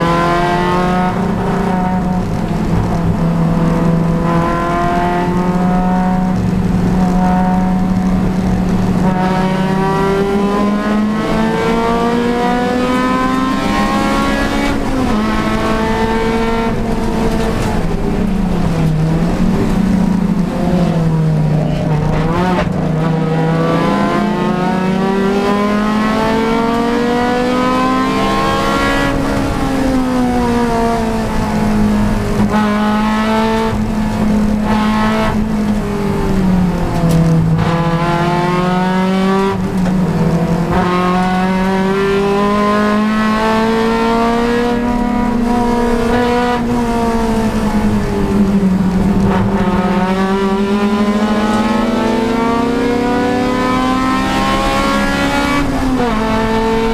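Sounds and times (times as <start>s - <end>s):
race car engine accelerating: 0.0s - 56.9s.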